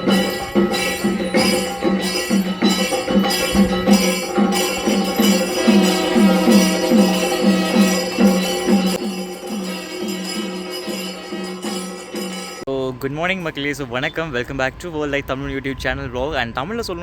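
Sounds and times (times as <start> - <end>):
music with percussion: 0.0 - 12.7.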